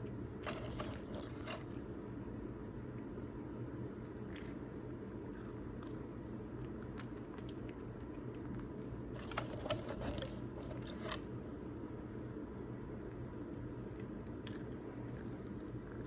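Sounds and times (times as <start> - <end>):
crunching and crackling clicks: 0.0 - 1.9, 4.0 - 11.2
steady low hum: 0.0 - 16.0.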